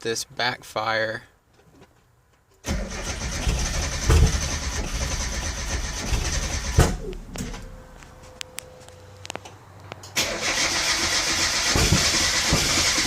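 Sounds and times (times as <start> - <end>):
car engine cranking: 2.6 - 8.6, 10.0 - 13.0
engine backfiring loudly: 2.7 - 8.0, 10.2 - 13.0.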